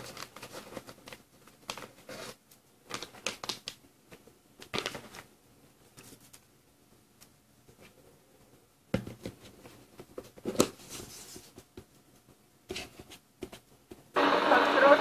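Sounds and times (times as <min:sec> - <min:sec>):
radio static crackling: 0:14.2 - 0:15.0.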